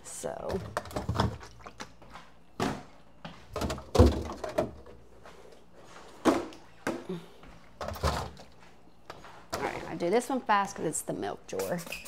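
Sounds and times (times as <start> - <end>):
food containers knocking on shelves: 3.5 - 4.8.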